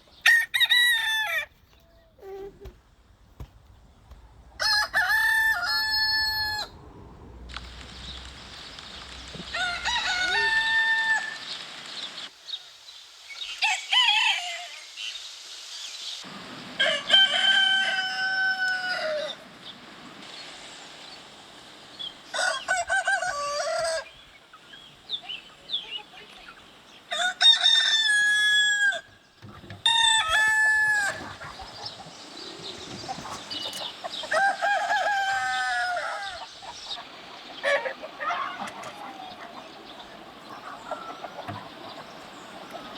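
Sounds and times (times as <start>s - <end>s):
rooster crowing: 0.2s - 1.5s, 4.6s - 8.0s, 9.2s - 11.5s, 16.8s - 19.4s, 22.3s - 24.1s, 27.1s - 29.2s, 29.8s - 31.6s, 34.1s - 36.6s.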